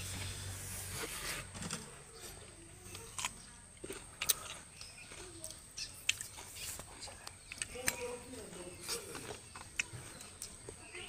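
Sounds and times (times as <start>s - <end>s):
mouth clicks and chewing smacks: 2.9s - 8.1s.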